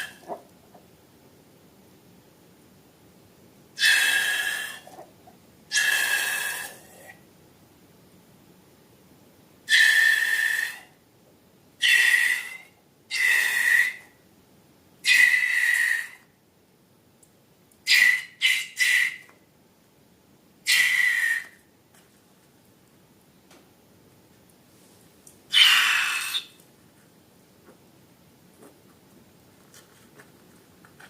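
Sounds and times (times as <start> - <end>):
air squealing out of balloon: 5.7 - 6.9, 20.7 - 21.6, 25.5 - 26.6.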